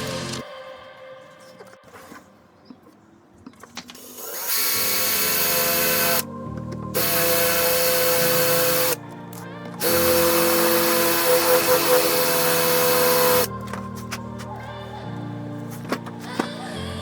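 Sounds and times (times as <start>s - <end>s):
electric drill whining: 4.0s - 6.3s, 7.0s - 9.0s, 9.8s - 13.5s.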